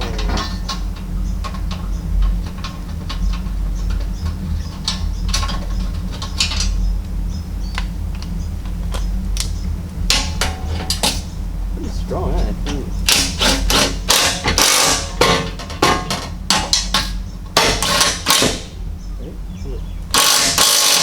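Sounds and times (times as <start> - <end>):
steady low hum: 6.8 - 14.5, 18.2 - 21.0.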